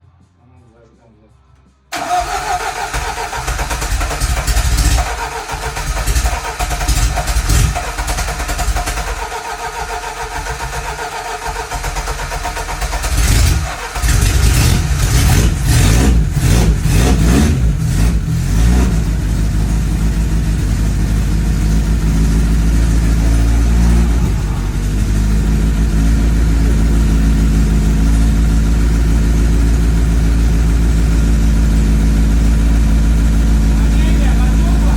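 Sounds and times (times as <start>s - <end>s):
car engine revving and idling: 1.9s - 34.9s
starter motor cranking: 2.0s - 15.3s.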